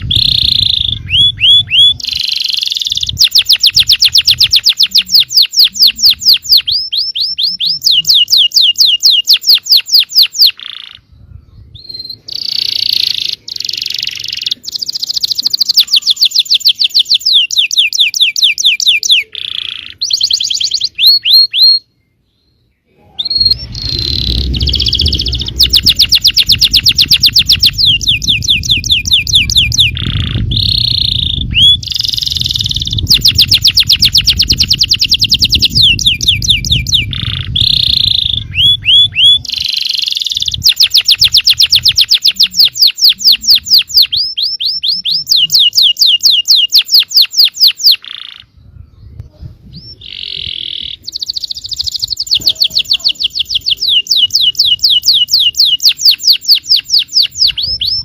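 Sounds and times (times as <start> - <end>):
canary singing trills: 0.0 - 58.0
low rumble: 22.9 - 39.6.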